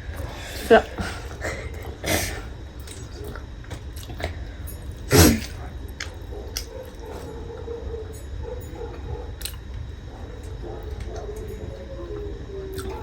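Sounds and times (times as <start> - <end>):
wet mouth clicks while chewing: 2.8 - 4.4, 6.0 - 7.0, 9.4 - 9.7, 12.7 - 13.0.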